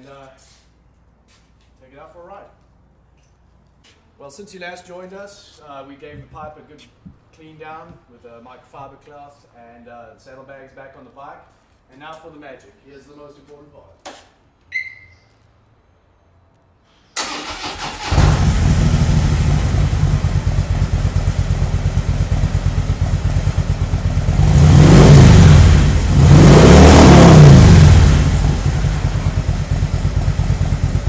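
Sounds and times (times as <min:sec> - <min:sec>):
motorcycle engine revving: 0:17.5 - 0:31.0
motorcycle engine idling: 0:18.3 - 0:24.6, 0:28.0 - 0:31.0.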